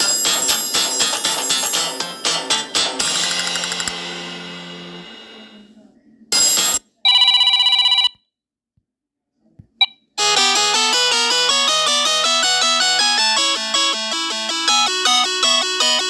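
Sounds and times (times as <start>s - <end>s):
phone ringtone melody: 0.0s - 4.0s, 10.2s - 16.0s.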